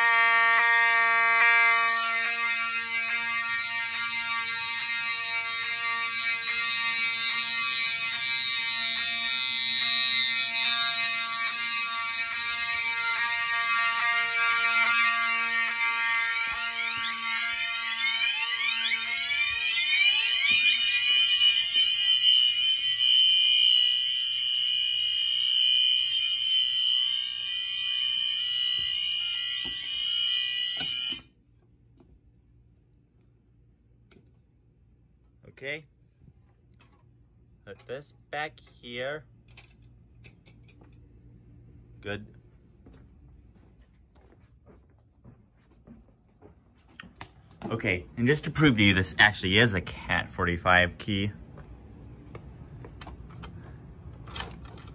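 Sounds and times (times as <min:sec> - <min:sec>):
fire alarm horns: 0:00.0 - 0:31.4, 0:47.6 - 0:51.7.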